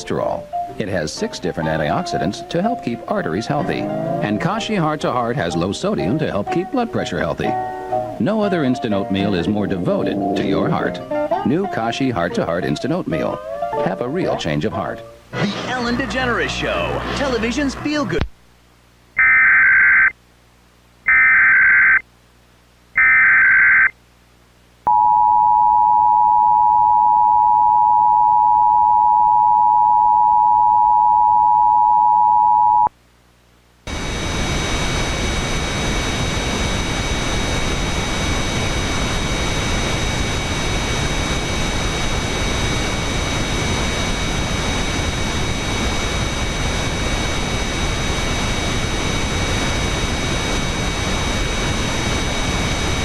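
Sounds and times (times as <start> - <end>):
static hiss: 0.0 - 24.9, 32.9 - 53.0
screechy data bursts: 15.3 - 18.2, 19.2 - 20.2, 21.1 - 22.0, 23.0 - 24.0.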